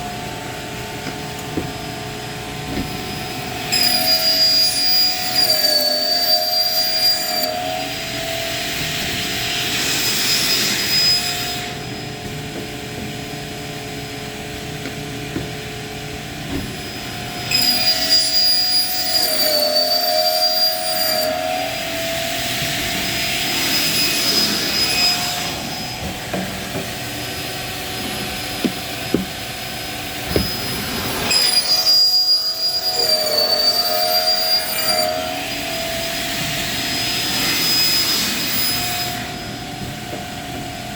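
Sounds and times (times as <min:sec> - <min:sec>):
circular saw whine: 0:00.0 - 0:14.8, 0:15.8 - 0:40.9
saw cutting pipe: 0:02.8 - 0:12.1, 0:16.5 - 0:39.7.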